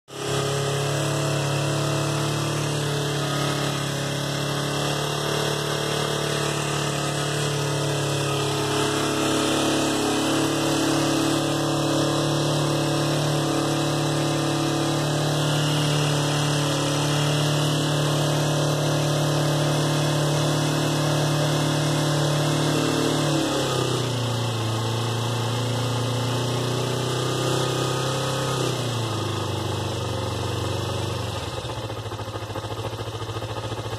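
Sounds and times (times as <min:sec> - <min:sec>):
motorcycle engine idling: 0:03.7 - 0:15.4, 0:28.9 - 0:33.9
engine knock: 0:30.0 - 0:33.9.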